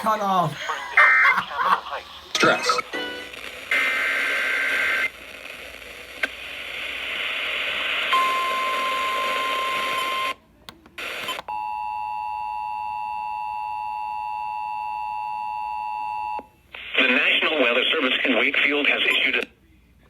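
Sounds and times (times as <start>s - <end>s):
static hiss: 0.0s - 8.2s.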